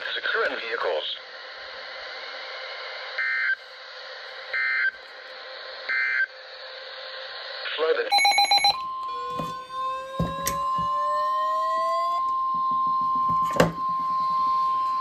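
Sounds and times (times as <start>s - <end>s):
steady alarm beep: 8.1s - 15.0s.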